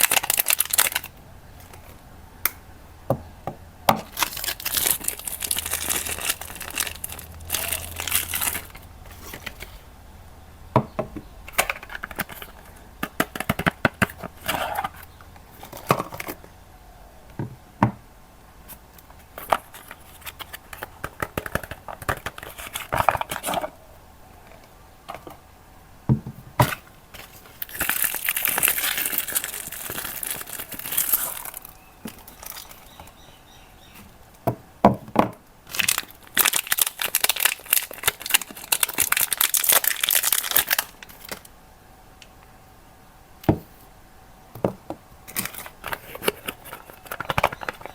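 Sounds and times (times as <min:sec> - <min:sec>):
wrapper crinkling and tearing: 0:00.0 - 0:01.8, 0:04.1 - 0:09.8, 0:27.2 - 0:33.3, 0:35.7 - 0:41.5, 0:45.3 - 0:47.9.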